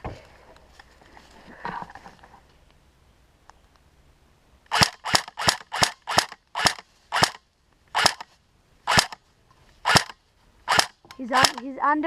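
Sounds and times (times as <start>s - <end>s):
airsoft gun shots cracking: 4.7s - 7.4s, 8.0s - 8.3s, 8.9s - 9.2s, 9.9s - 11.6s.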